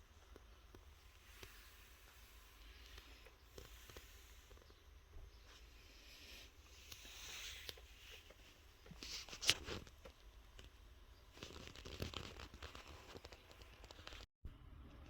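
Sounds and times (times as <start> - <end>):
packaging rustling and crinkling: 8.4 - 14.3.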